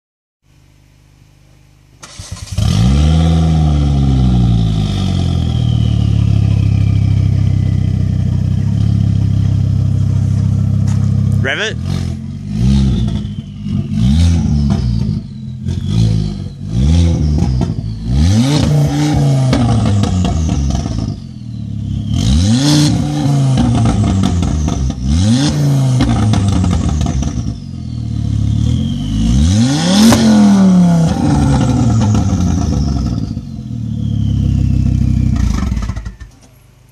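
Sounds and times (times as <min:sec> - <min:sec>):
car engine revving in blips: 0:02.0 - 0:36.8
high turbo whistle: 0:05.3 - 0:08.4, 0:12.6 - 0:23.6, 0:27.2 - 0:36.2.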